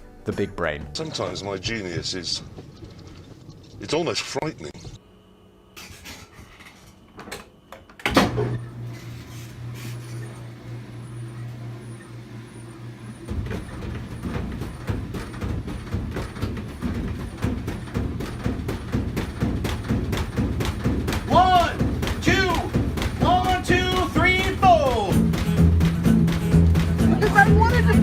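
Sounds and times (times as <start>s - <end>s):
rough low rumble with rattling clicks: 2.0s - 4.0s, 13.3s - 28.0s
machine humming: 8.3s - 28.0s.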